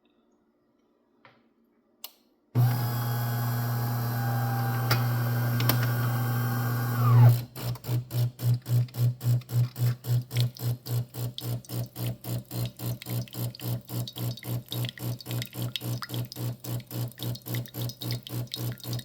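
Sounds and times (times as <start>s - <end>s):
motor whine winding down: 2.6s - 7.4s
espresso machine hum: 2.6s - 9.4s
water pump pulsing: 2.6s - 19.0s.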